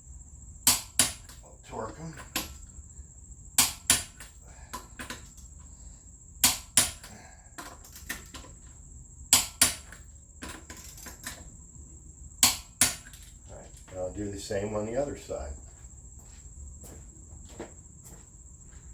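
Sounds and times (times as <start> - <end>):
torque wrench clicks: 9.3 - 10.0.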